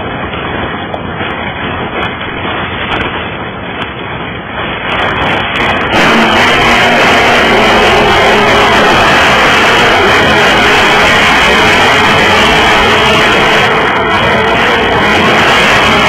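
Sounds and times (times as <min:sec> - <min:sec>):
water splashing: 0:00.0 - 0:16.0.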